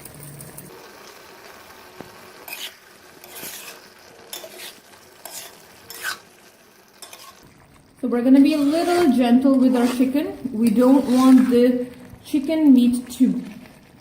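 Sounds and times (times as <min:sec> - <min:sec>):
chicken sizzling in oil: 0:00.0 - 0:14.0
spatula scraping a pan: 0:02.4 - 0:06.4, 0:07.0 - 0:07.5, 0:08.4 - 0:11.8.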